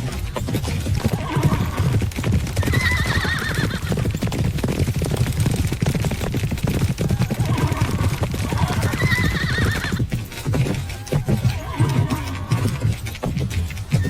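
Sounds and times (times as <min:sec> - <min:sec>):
horses galloping: 0:00.0 - 0:14.0
horse whinnying: 0:00.8 - 0:04.3, 0:07.0 - 0:14.0.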